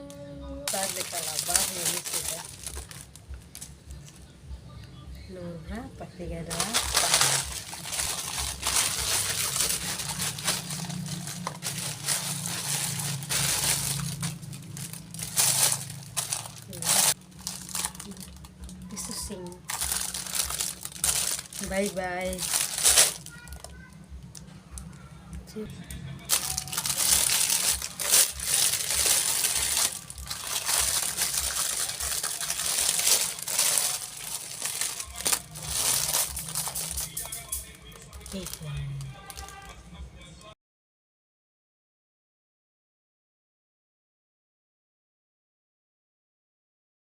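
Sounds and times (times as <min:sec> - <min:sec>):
packaging crinkling and rustling: 0:00.7 - 0:04.2, 0:06.4 - 0:24.9, 0:26.3 - 0:39.8.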